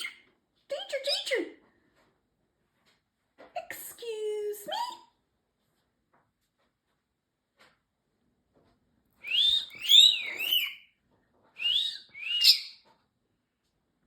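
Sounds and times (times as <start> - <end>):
parrotlet whistling: 9.2 - 10.8, 11.6 - 12.8.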